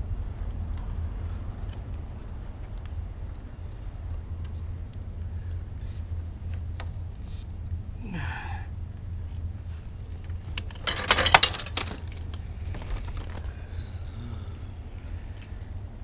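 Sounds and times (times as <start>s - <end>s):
steady low hum: 0.0s - 16.0s
metal parts clinking: 10.5s - 13.2s.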